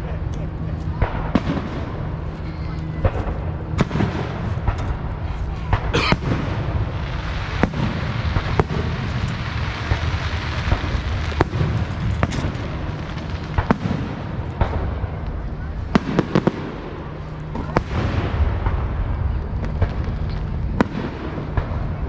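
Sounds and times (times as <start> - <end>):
fireworks bangs: 0.0 - 22.0
fireworks crackling burst: 0.0 - 22.0
low rumble: 0.0 - 22.0.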